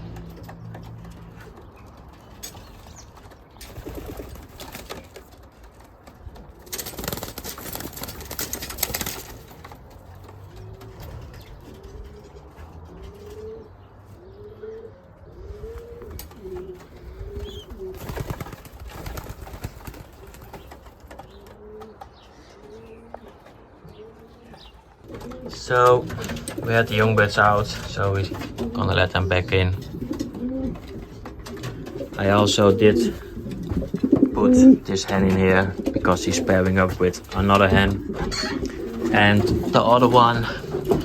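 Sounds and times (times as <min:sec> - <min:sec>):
pigeons cooing: 0:00.0 - 0:41.0
wings flapping: 0:02.7 - 0:11.4, 0:15.7 - 0:21.5.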